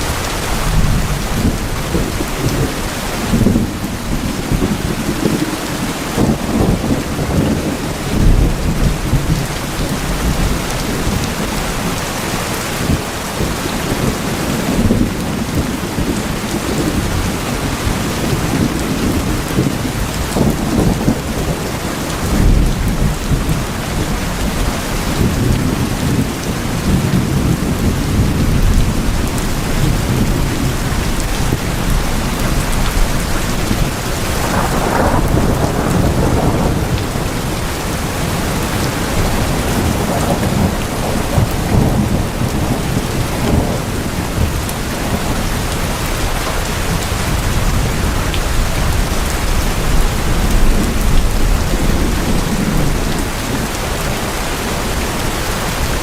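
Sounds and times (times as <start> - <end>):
heavy rain on tin roofs: 0.0 - 56.0
low thunder rumbling: 0.0 - 56.0.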